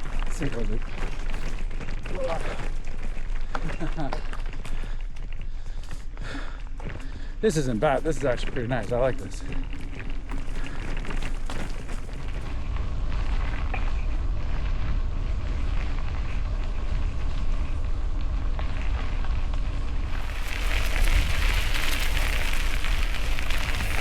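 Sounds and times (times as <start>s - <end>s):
bike tyres crunching and rattling: 0.0s - 24.0s
wind rumble on microphone: 9.4s - 24.0s.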